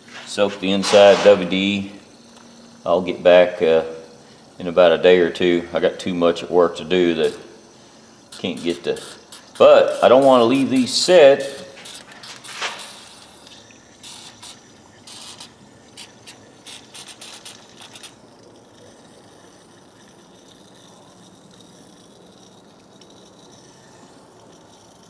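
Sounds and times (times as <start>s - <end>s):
faint steady hiss: 0.0s - 20.3s
aerosol can spraying: 6.7s - 18.2s.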